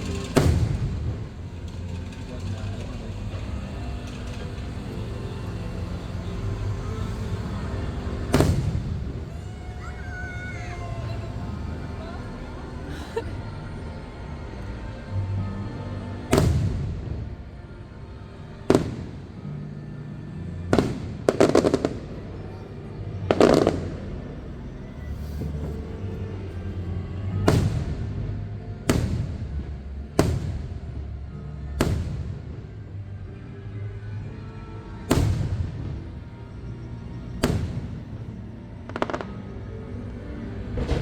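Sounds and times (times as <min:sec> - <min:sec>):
crackling firework bangs: 0:00.0 - 0:02.9, 0:07.9 - 0:09.3, 0:16.3 - 0:17.3, 0:18.7 - 0:19.2, 0:20.7 - 0:22.2, 0:27.4 - 0:28.2, 0:28.9 - 0:31.0, 0:31.8 - 0:32.6, 0:35.1 - 0:36.0, 0:37.4 - 0:38.2, 0:40.7 - 0:41.0
fireworks booming: 0:00.0 - 0:12.5, 0:16.3 - 0:17.5, 0:18.7 - 0:19.4, 0:20.7 - 0:22.5, 0:23.3 - 0:24.4, 0:25.1 - 0:28.3, 0:28.9 - 0:31.1, 0:31.8 - 0:32.8, 0:35.1 - 0:36.4, 0:37.0 - 0:38.3, 0:38.9 - 0:39.6, 0:40.6 - 0:41.0
music: 0:00.0 - 0:41.0.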